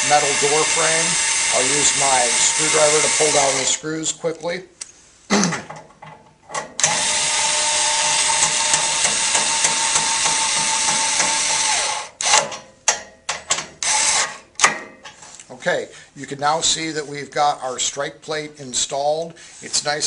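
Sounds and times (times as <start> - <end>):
power screwdriver whining: 0.0 - 3.8, 6.8 - 12.5, 13.8 - 14.4.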